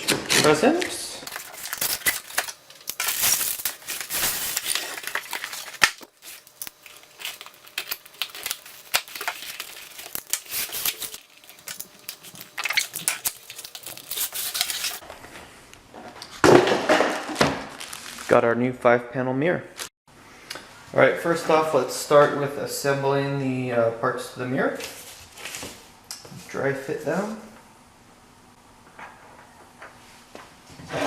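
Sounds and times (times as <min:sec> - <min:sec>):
plastic and cardboard crinkling: 0:01.3 - 0:15.0, 0:17.0 - 0:18.4.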